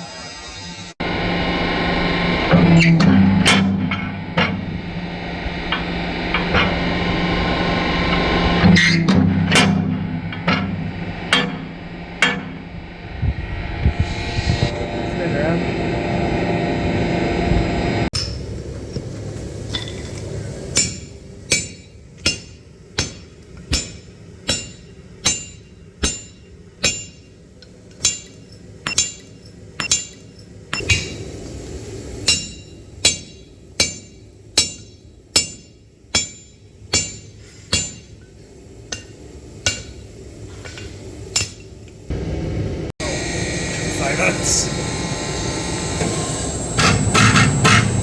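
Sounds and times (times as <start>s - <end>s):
low rumble: 0.0s - 21.4s
hammer striking steel on anvil: 2.5s - 4.8s, 8.0s - 12.8s, 18.2s - 18.6s, 19.7s - 31.3s, 32.2s - 41.9s, 46.8s - 48.0s.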